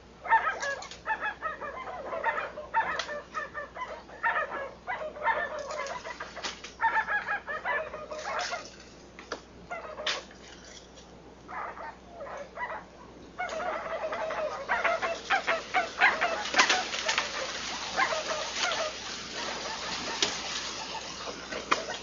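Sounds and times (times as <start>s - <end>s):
bird giving harsh cackling calls: 12.8s - 22.0s.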